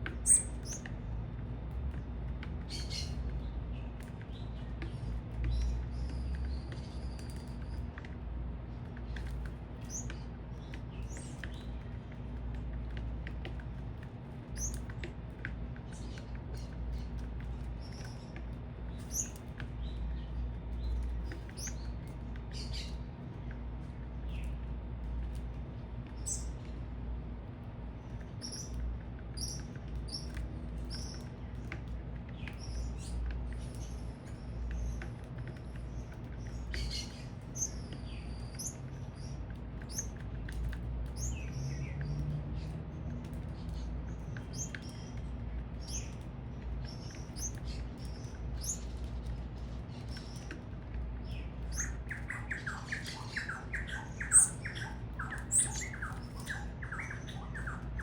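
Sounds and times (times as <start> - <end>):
low city rumble: 0.0 - 58.0
small birds chirping: 0.0 - 58.0
harsh squawking bird calls: 51.3 - 58.0.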